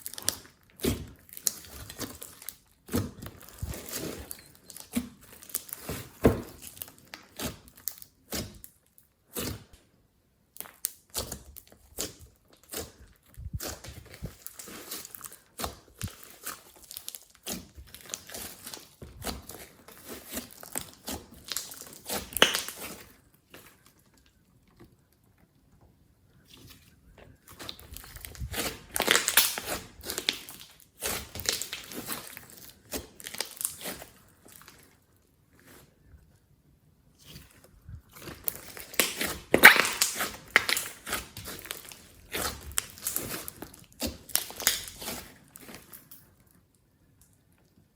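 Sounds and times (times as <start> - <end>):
slime squishing: 0.0 - 9.8, 10.6 - 36.4, 37.0 - 47.8.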